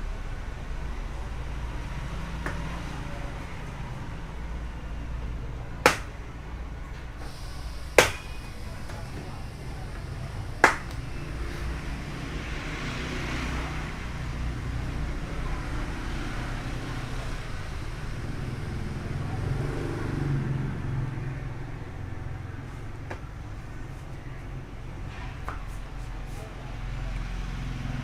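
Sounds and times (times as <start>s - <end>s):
low traffic rumble: 0.0s - 28.0s
sharp plastic snap: 5.8s - 6.2s, 10.6s - 11.0s.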